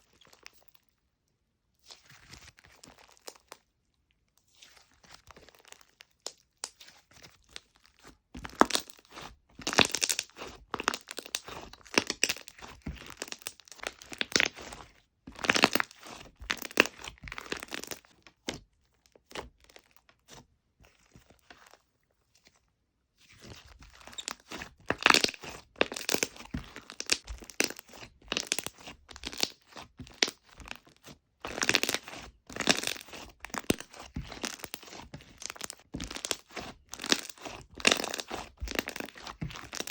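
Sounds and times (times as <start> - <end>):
slime crackling and popping: 8.4 - 18.6, 23.9 - 39.9.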